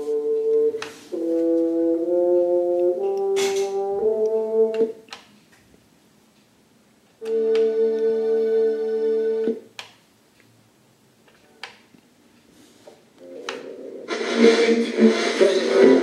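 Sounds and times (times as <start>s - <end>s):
brass-like held chords from radio: 14.0s - 16.0s.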